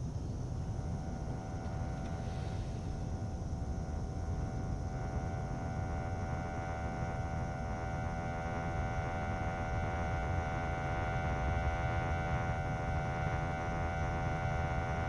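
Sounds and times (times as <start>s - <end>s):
steady low rumble: 0.0s - 10.7s.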